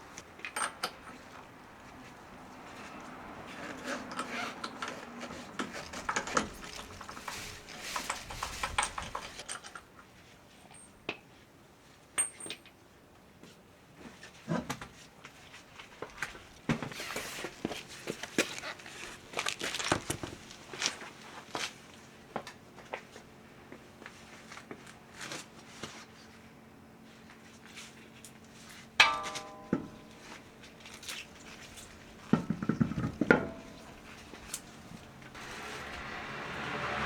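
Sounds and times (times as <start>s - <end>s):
metal tools clinking and knocking: 29.0s - 34.1s.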